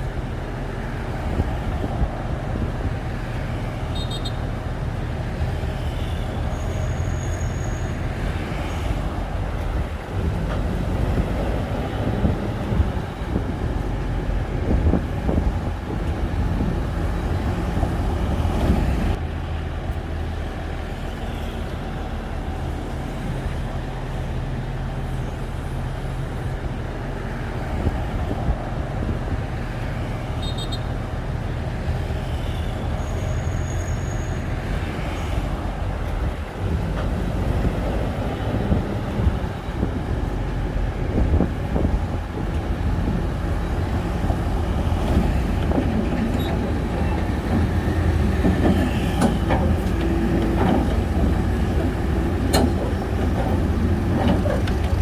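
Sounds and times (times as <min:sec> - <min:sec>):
bulldozer diesel engine running: 0:34.4 - 0:55.0.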